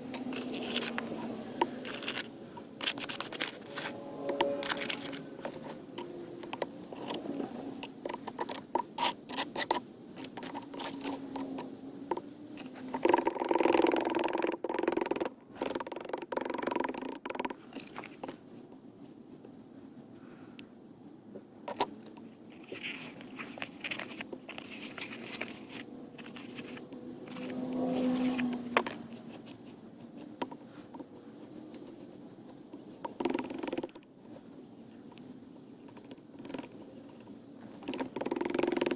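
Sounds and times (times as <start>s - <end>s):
tool scraping wet cement: 0.1s - 6.1s, 6.9s - 11.6s.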